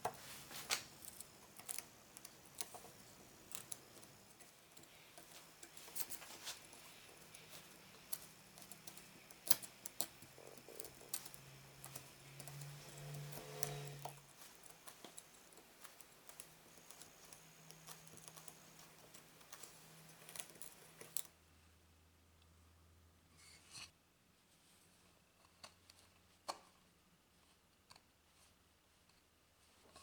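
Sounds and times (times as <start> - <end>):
small parts clicking and tapping: 0.0 - 21.4
faint low hum: 0.0 - 30.0.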